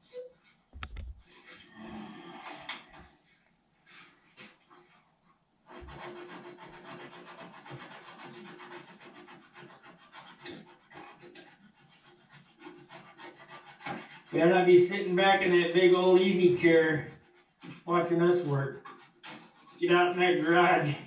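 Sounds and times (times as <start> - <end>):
sandpaper rubbing: 5.7 - 21.0.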